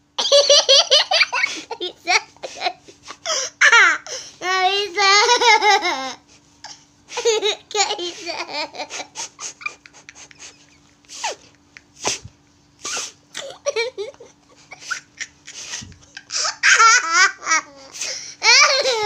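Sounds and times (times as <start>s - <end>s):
breathy gasps and giggles: 6.3s - 16.6s
high-pitched laughter: 7.2s - 12.0s, 12.9s - 19.0s.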